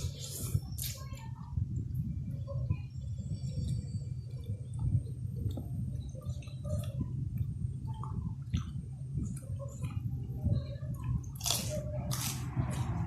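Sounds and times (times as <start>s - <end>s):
person chewing food: 11.3s - 12.9s.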